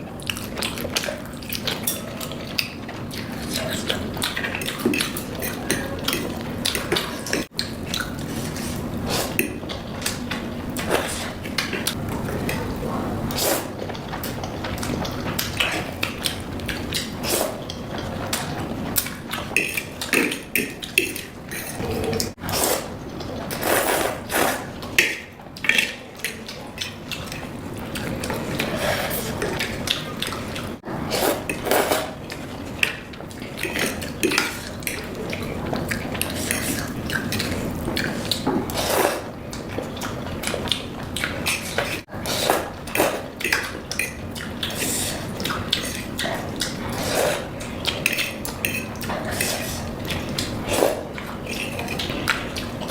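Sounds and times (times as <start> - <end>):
utensils clattering against a bowl: 0.0 - 52.9.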